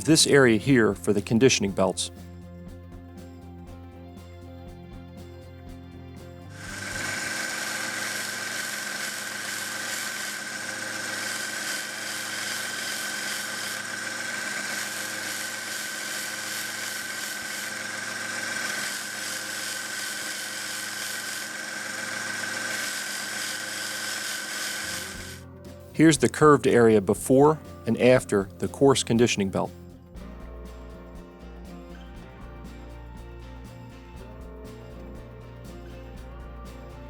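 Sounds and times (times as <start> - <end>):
belt grinder whine: 6.5 - 25.4
metal sanding hiss: 6.6 - 25.4.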